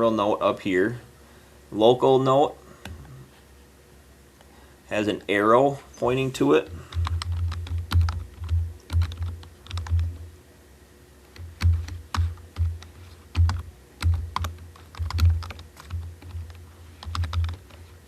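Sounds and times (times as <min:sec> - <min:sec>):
computer keyboard typing: 0:06.6 - 0:10.2, 0:11.3 - 0:17.8.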